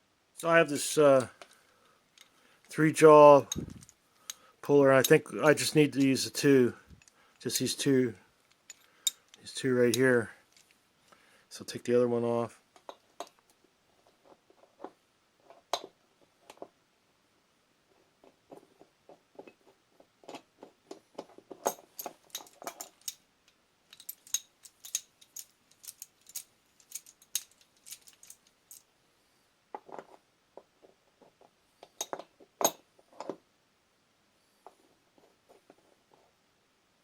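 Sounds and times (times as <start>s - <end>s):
metal tool parts clicking: 3.4s - 4.4s, 8.5s - 10.7s, 21.6s - 23.2s, 23.9s - 28.9s.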